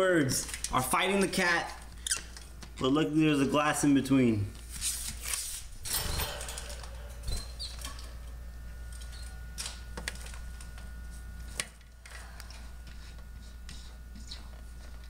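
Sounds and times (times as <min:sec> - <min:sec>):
low steady hum: 0:05.6 - 0:15.0.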